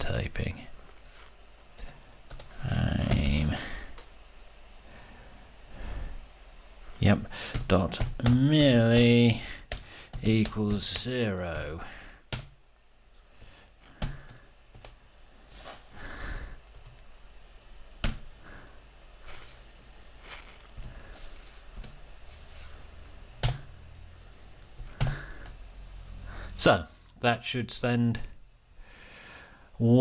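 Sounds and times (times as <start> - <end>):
computer keyboard typing: 1.8 - 3.4, 7.5 - 12.6, 13.9 - 15.0, 23.4 - 23.7, 24.8 - 25.6.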